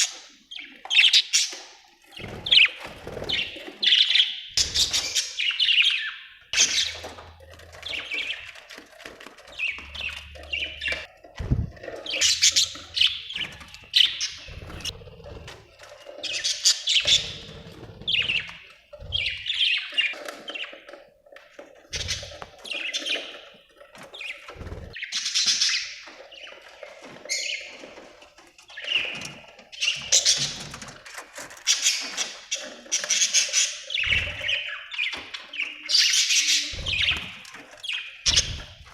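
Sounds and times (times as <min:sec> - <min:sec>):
budgerigars chirping and squawking: 0:00.0 - 0:21.0, 0:21.9 - 0:28.1, 0:28.7 - 0:38.9
soft low thumps: 0:11.4 - 0:11.8.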